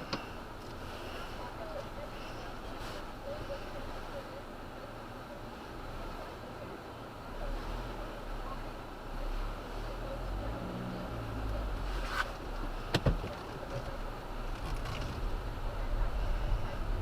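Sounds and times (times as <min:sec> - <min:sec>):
car engine and tyres rumbling: 0:00.0 - 0:17.0.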